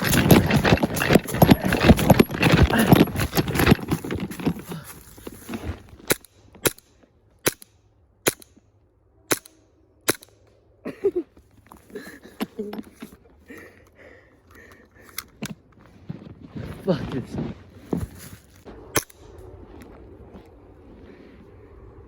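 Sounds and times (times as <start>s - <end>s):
soft rustling: 0.0s - 6.0s, 15.6s - 18.7s.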